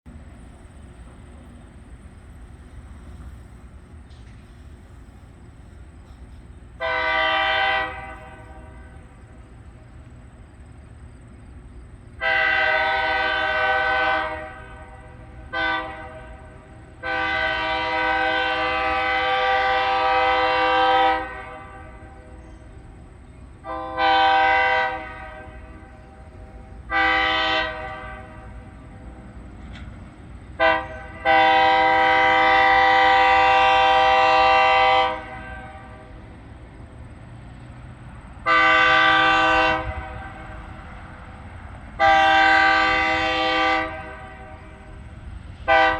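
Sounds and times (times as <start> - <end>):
train rumble: 0.0 - 45.9
locomotive air horn blasts: 2.6 - 9.6, 12.2 - 22.7, 23.6 - 29.4, 30.6 - 36.2, 38.4 - 45.9.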